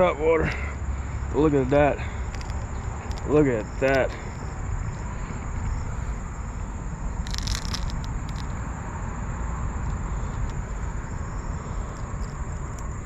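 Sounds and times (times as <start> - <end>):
crickets chirring: 0.0 - 13.0
crackling burst: 7.1 - 8.6.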